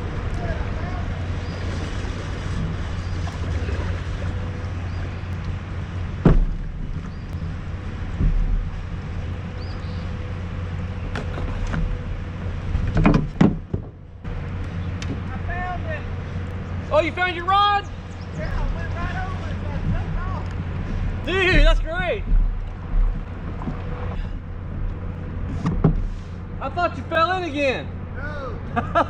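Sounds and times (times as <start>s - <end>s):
river water rushing: 0.0s - 12.7s
sharp knocks: 6.2s - 7.4s, 21.4s - 23.8s.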